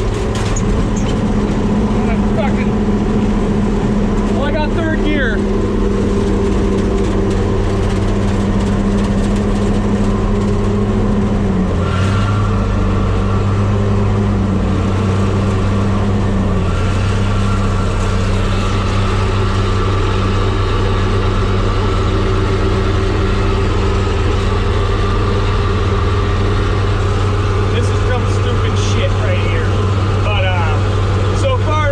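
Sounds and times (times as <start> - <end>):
tractor engine running: 0.0 - 31.9.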